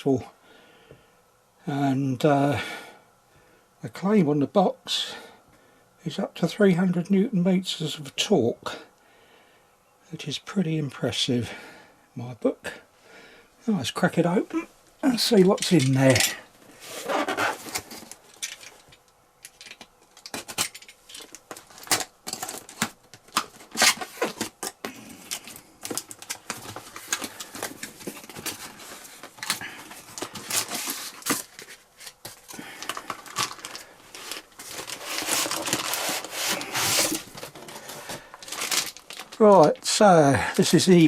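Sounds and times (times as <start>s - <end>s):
packaging crinkling: 15.0s - 41.0s
cardboard rubbing and scraping: 16.8s - 18.1s, 34.1s - 38.8s.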